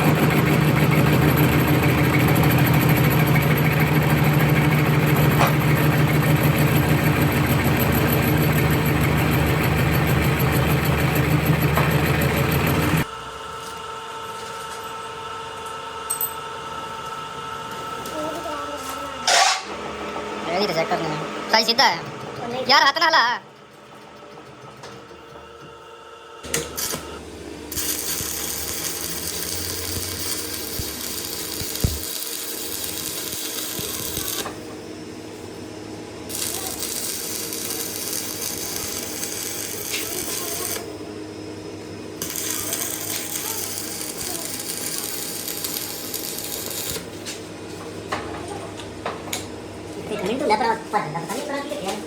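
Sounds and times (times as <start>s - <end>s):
low machine hum: 0.0s - 52.0s
arc welding hiss: 27.8s - 34.5s, 36.3s - 40.9s, 42.2s - 47.1s.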